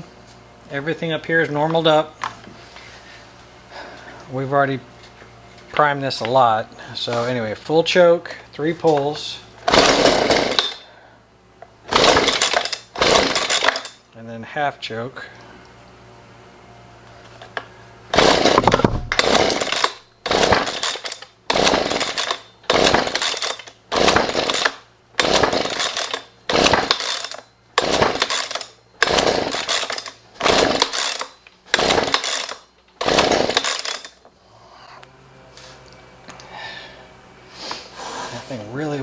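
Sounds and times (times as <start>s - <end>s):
recoil starter pulls: 8.8s - 10.9s, 11.9s - 14.0s, 17.4s - 34.2s
engine sputtering: 9.2s - 10.8s, 11.9s - 14.0s, 18.1s - 34.2s.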